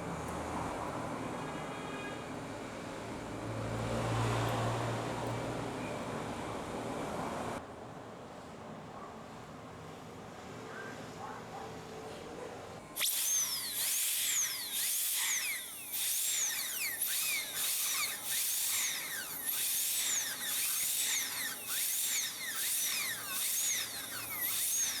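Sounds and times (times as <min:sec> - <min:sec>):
dental drill whine: 0:12.9 - 0:25.0
suction: 0:12.9 - 0:25.0.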